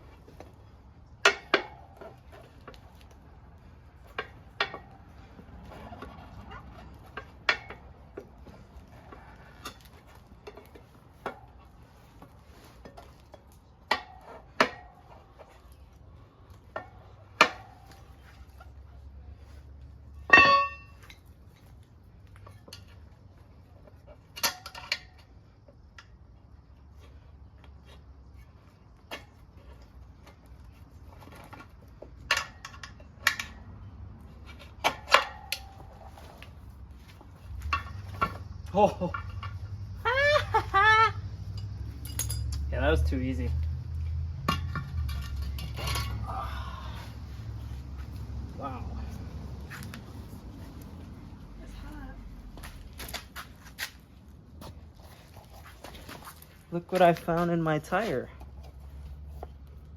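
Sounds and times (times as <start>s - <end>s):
screwdrivers clanking on wheel rim: 1.2s - 3.2s, 4.0s - 15.6s, 20.2s - 21.3s, 24.0s - 25.4s, 29.0s - 33.8s, 34.4s - 36.5s, 37.4s - 40.5s, 41.4s - 42.7s, 44.4s - 46.4s.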